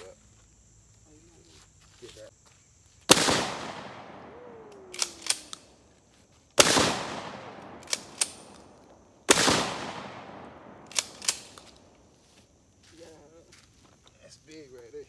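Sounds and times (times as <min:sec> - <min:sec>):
shotgun blasts echoing: 0:03.1 - 0:05.7, 0:06.6 - 0:11.7
shotgun action clacking: 0:04.8 - 0:05.7, 0:06.6 - 0:11.8.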